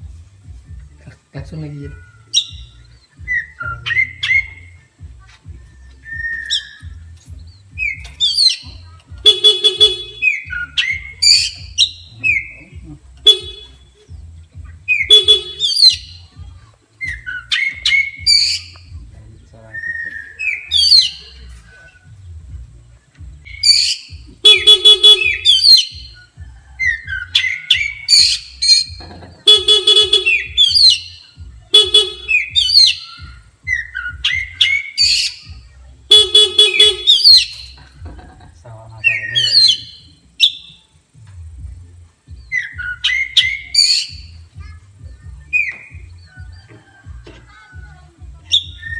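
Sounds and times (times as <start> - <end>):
bird singing sharp whistles: 1.4 - 5.0, 5.8 - 14.0, 14.8 - 16.4, 17.0 - 19.0, 19.7 - 22.2, 23.4 - 37.8, 39.0 - 40.9, 42.3 - 44.4
buzzy horn-like bird notes: 5.7 - 16.4, 17.0 - 40.9, 42.4 - 47.8.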